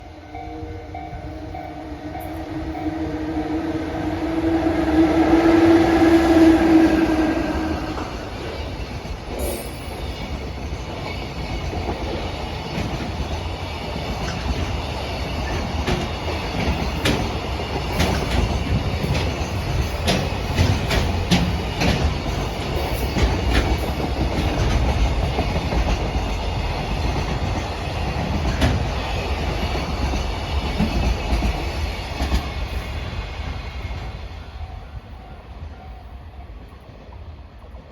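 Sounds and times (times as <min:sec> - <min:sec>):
electric locomotive humming: 0:00.0 - 0:37.9
wagon wheels clicking over rail joints: 0:15.4 - 0:28.9.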